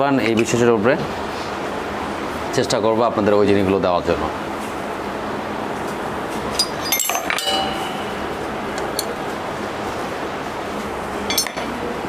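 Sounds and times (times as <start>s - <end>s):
steady background noise: 0.0s - 12.0s
metal tools clinking: 6.6s - 9.2s, 11.3s - 11.7s.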